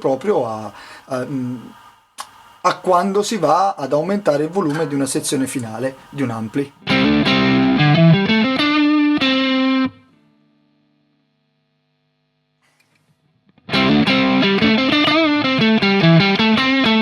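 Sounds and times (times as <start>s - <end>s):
distorted electric guitar riff: 6.5s - 11.0s, 13.5s - 17.0s.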